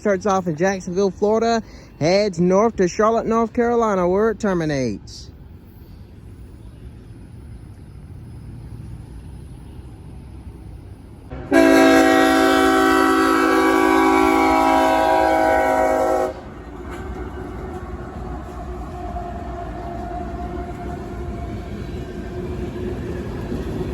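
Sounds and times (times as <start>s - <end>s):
train rumbling on rails: 0.0s - 23.9s
locomotive air horn: 11.3s - 16.6s.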